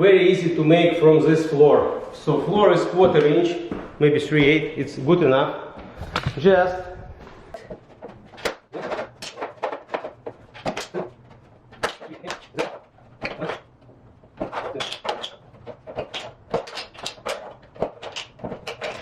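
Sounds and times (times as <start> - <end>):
vinyl plank cracking and clicking: 14.5 - 19.0.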